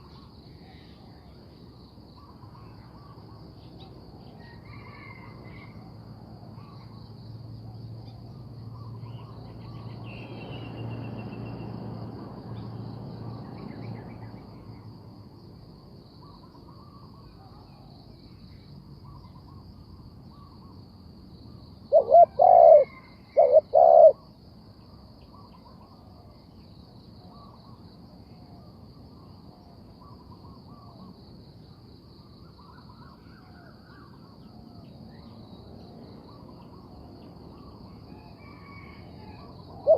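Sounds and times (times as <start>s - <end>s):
faint bird chirps: 6.5s - 11.7s, 16.2s - 20.8s, 21.4s - 24.3s, 25.2s - 31.2s, 32.2s - 39.9s
dove cooing: 21.9s - 24.2s, 38.5s - 39.9s.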